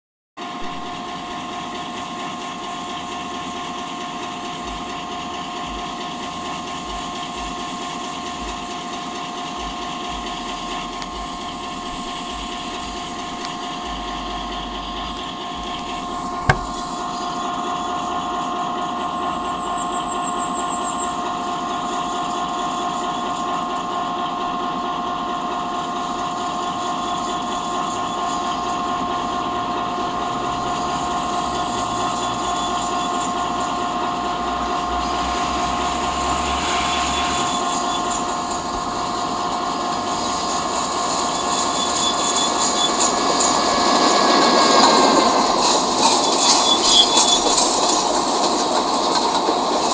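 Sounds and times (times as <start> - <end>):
freight train rumbling by: 0.4 - 49.9
two-note whine: 9.6 - 17.5.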